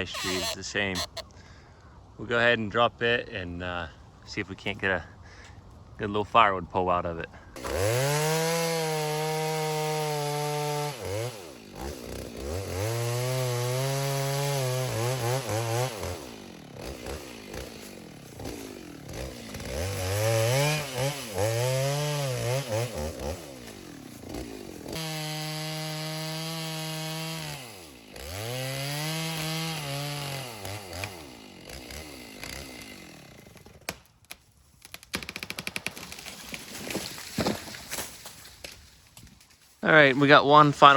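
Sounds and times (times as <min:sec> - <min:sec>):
chainsaw cutting wood: 0:00.0 - 0:01.2, 0:07.6 - 0:38.8
wood cracking: 0:33.4 - 0:39.6.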